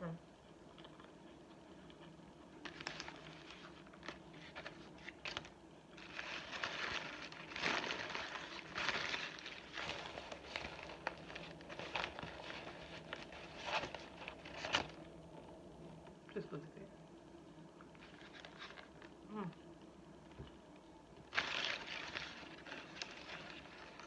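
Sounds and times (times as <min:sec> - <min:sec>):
paper wrapper crinkling: 0:02.6 - 0:16.1, 0:17.9 - 0:19.2, 0:21.3 - 0:24.0.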